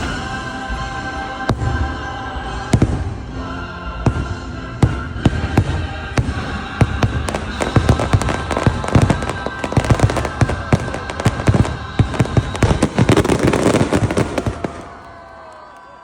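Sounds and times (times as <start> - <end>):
firework bangs: 0.0 - 15.6
music soundtrack: 0.0 - 16.0.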